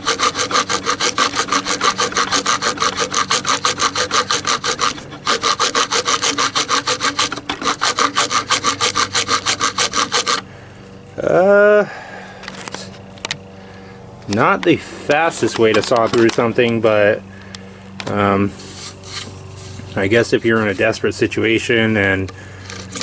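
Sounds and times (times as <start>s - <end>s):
serrated knife sawing wood: 0.0s - 10.5s, 18.1s - 21.2s, 21.9s - 23.0s.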